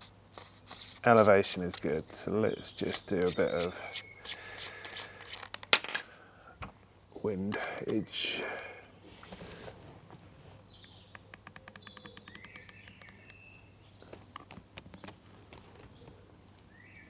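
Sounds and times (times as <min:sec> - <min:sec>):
birds chirping: 0:01.1 - 0:05.2, 0:06.3 - 0:09.4, 0:10.2 - 0:17.0
scope turret clicks: 0:10.8 - 0:13.4.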